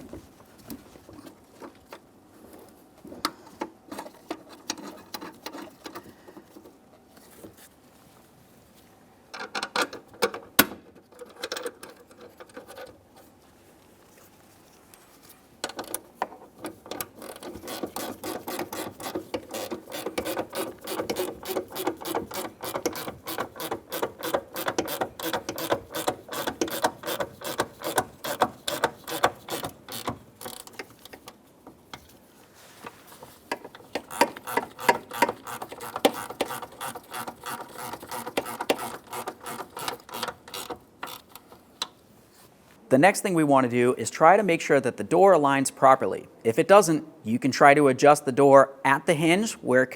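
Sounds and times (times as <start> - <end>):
ratchet wrench clicking: 17.0 - 31.2, 33.5 - 41.9.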